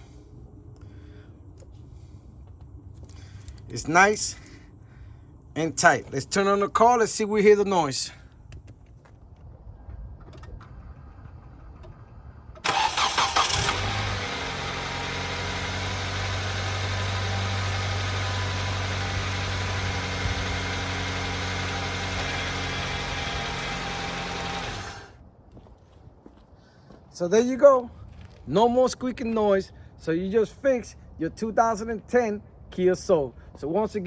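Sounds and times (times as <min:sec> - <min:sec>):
car engine cranking and idling: 0:09.9 - 0:25.2.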